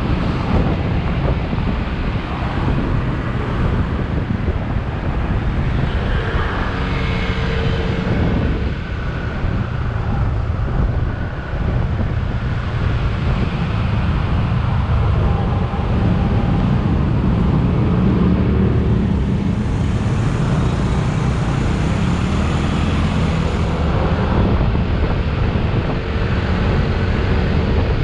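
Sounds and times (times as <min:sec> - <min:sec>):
motorcycle running: 0:00.0 - 0:28.0
traffic: 0:00.0 - 0:28.0
wind buffeting microphone: 0:00.0 - 0:28.0
faint tones: 0:15.0 - 0:20.4.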